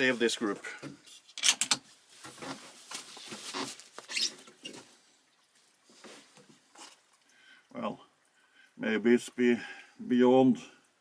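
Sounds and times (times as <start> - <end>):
rifle handling clicks and scrapes: 1.1 - 4.3.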